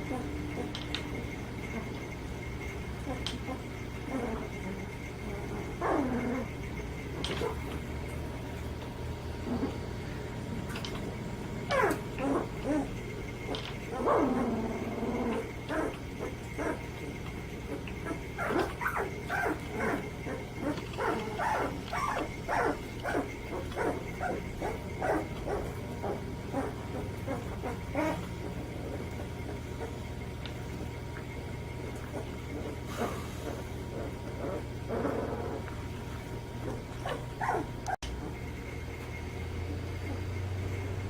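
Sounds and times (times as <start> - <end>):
puppies yipping and barking: 2.9 - 8.4, 11.7 - 31.2, 31.8 - 38.4.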